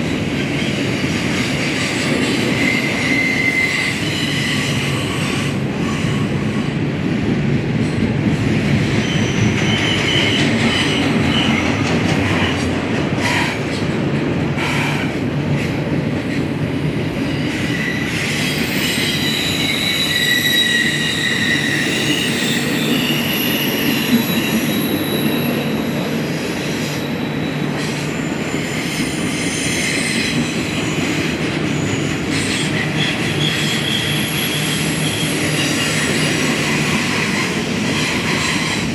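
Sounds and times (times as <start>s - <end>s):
train cars rumbling past: 0.0s - 38.9s
high wheel squeals: 2.0s - 6.4s, 8.9s - 11.8s, 17.2s - 38.9s.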